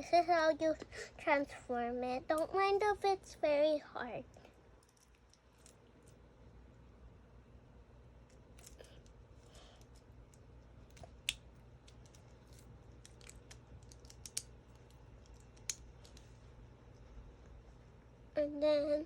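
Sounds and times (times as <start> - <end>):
plastic toy clicking and snapping: 10.9 - 16.2.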